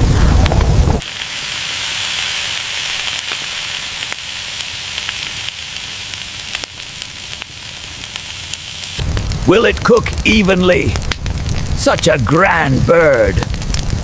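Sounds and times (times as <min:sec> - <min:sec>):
low rumble: 0:00.0 - 0:01.0, 0:09.0 - 0:11.9
meat sizzling and popping: 0:00.5 - 0:14.0.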